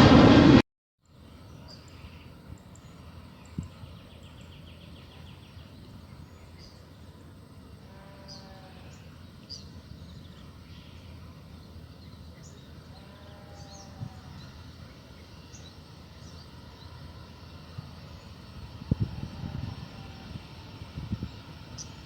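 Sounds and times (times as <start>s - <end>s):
low rumble: 0.0s - 0.6s.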